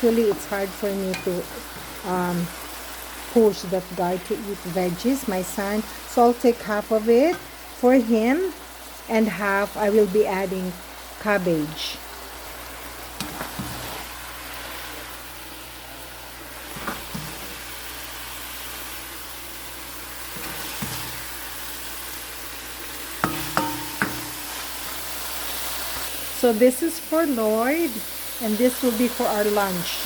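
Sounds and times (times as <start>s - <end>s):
meat sizzling in a pot: 0.0s - 30.0s
utensil knocking against pot: 23.2s - 24.4s
spoon stirring: 23.2s - 24.7s.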